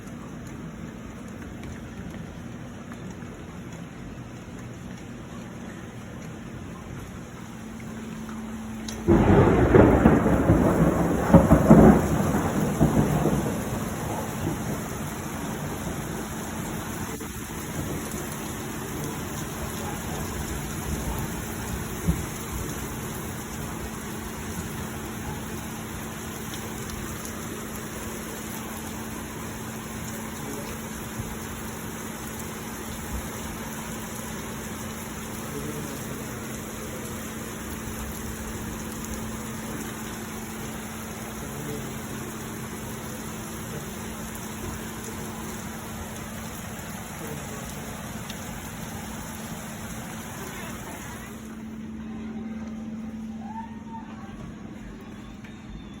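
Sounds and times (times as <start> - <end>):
steady rain falling: 0.0 - 56.0
thunderclap rumbling: 7.2 - 27.3.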